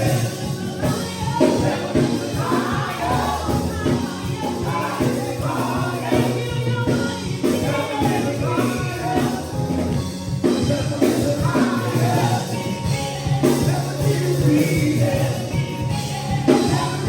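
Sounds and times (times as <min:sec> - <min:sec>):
gospel singing with band: 0:00.0 - 0:17.0.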